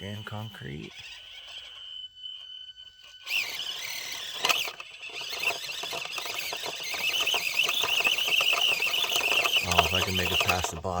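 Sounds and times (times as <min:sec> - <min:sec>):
small electric motor whining: 0:00.0 - 0:11.0
tires scraping on rock: 0:02.9 - 0:11.0.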